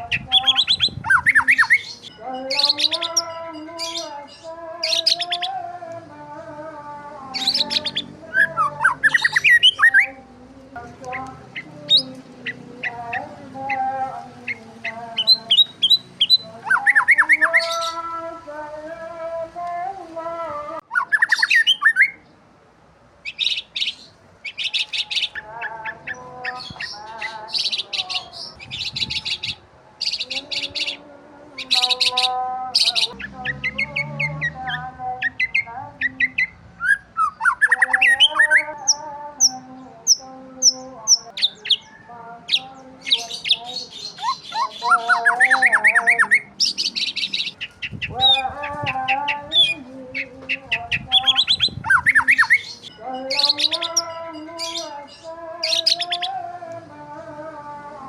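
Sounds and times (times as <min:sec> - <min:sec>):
wavering whistled bird calls: 0:00.0 - 0:03.2, 0:07.4 - 0:10.2, 0:11.1 - 0:18.0, 0:20.9 - 0:22.2, 0:31.7 - 0:39.0, 0:43.1 - 0:55.0
birds chirping: 0:00.0 - 0:22.5, 0:23.2 - 0:58.0.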